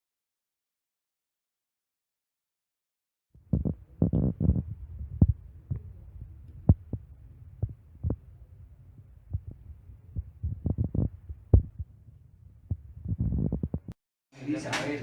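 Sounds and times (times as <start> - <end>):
faint low rumble: 3.4 - 14.0
low thumps and knocks: 3.4 - 14.0.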